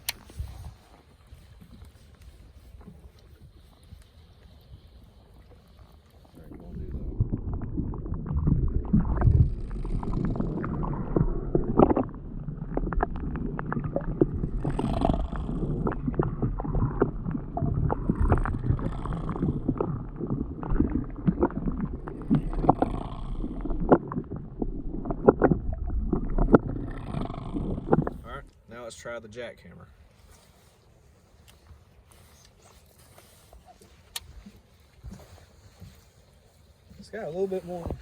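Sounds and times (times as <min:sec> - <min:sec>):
water sloshing and splashing: 0:00.0 - 0:28.7, 0:30.0 - 0:38.0
low rumble: 0:06.4 - 0:28.6.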